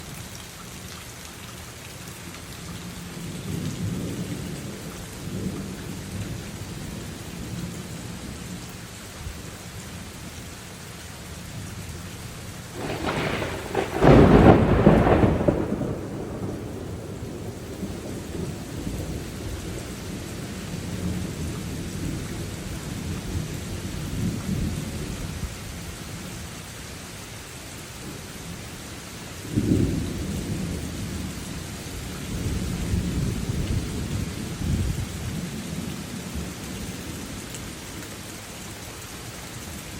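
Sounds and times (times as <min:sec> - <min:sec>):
steady rain falling: 0:00.0 - 0:39.9
loud close thunderclap: 0:12.8 - 0:19.8
low rolls of thunder: 0:12.8 - 0:25.6, 0:29.4 - 0:37.8.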